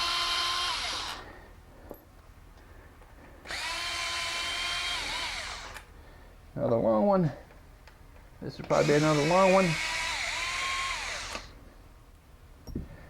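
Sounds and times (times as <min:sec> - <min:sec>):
electric power driver whirring: 0:00.0 - 0:01.2, 0:03.4 - 0:05.9, 0:08.7 - 0:11.5.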